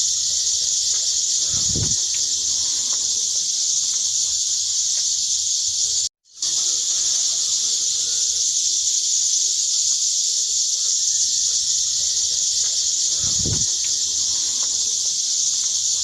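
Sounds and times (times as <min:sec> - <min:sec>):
loud high-pitched hiss: 0:00.0 - 0:16.0
low thump: 0:01.4 - 0:02.3, 0:13.1 - 0:14.0.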